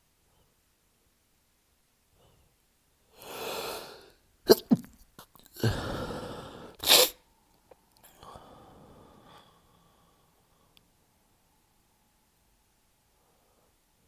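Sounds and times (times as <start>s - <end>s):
man's stifled sneezes: 4.5s - 4.9s, 6.8s - 7.2s
faint breathing: 5.6s - 6.8s, 8.1s - 11.0s, 13.1s - 14.0s.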